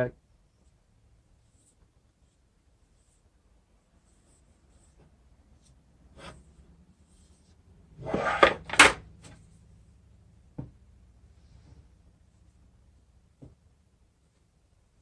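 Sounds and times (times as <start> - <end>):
clatter and scrape: 8.0 - 9.5.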